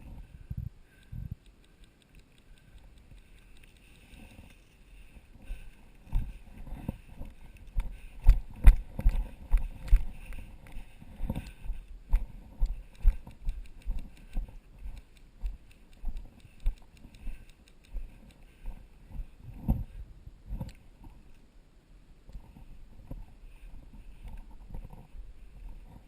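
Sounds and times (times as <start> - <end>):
footsteps on rough ground: 5.4 - 13.5.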